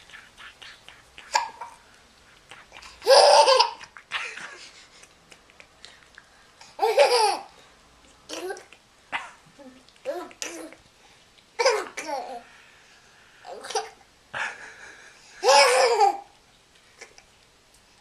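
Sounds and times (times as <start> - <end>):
child laughing: 15.4 - 16.2.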